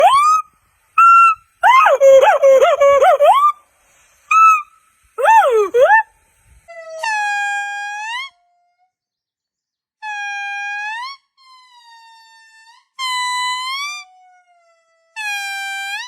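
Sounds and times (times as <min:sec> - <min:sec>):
monkey hooting calls: 0:00.0 - 0:00.4, 0:01.0 - 0:03.6, 0:04.3 - 0:04.6, 0:05.2 - 0:06.1.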